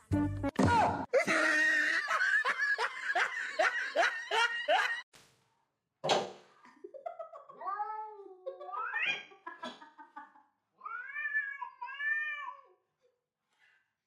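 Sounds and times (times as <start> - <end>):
cat meowing: 10.8 - 12.7.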